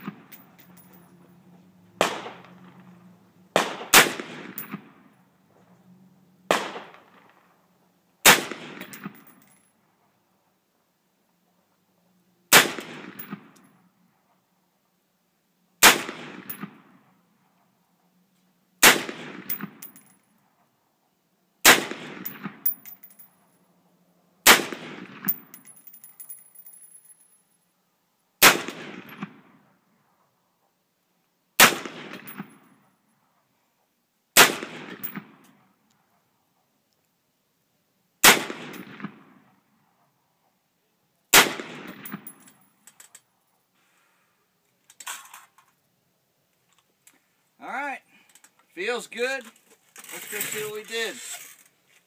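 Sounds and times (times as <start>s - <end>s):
rifle shots with echo: 2.0s - 2.5s, 3.5s - 5.1s, 6.5s - 7.4s, 8.2s - 9.3s, 12.5s - 13.5s, 15.8s - 17.0s, 18.8s - 19.9s, 21.6s - 22.7s, 24.4s - 25.5s, 28.4s - 29.6s, 31.6s - 32.5s, 34.4s - 35.4s, 38.2s - 39.3s, 41.3s - 42.4s.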